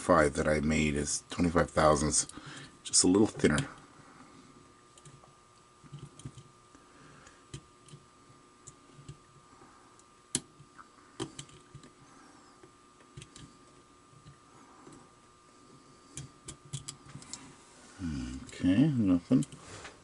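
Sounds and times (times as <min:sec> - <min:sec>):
lock pick clicking and scraping: 0:16.2 - 0:17.0.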